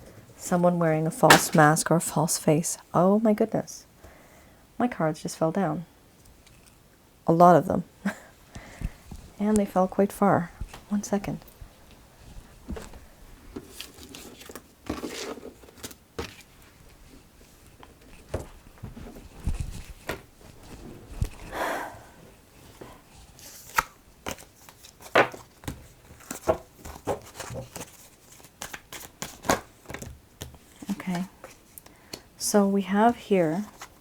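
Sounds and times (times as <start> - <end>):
cards rustling and clicking: 1.2 - 1.8.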